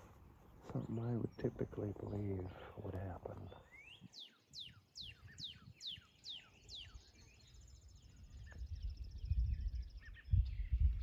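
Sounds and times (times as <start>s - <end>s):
songbird singing: 0.0s - 11.0s
wind rumble on microphone: 4.7s - 11.0s.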